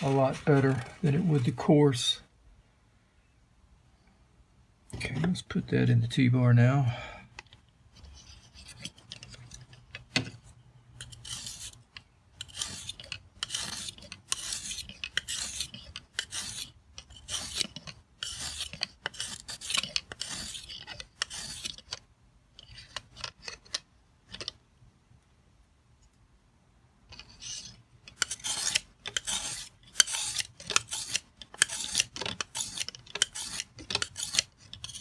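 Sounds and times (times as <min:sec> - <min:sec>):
sharpening stone rasping strokes: 0:11.0 - 0:11.8, 0:12.4 - 0:21.9, 0:27.2 - 0:35.0.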